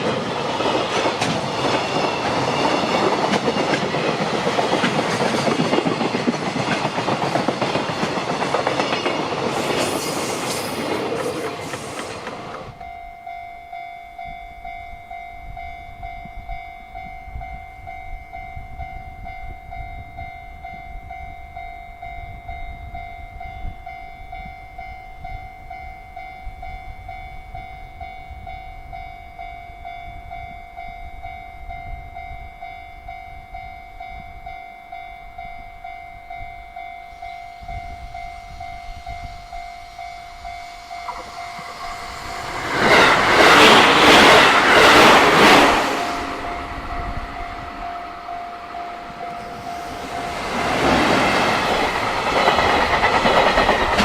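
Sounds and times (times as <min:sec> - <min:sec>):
low rumble of rail traffic: 0:00.0 - 0:54.0
level crossing bell ringing: 0:12.8 - 0:52.3.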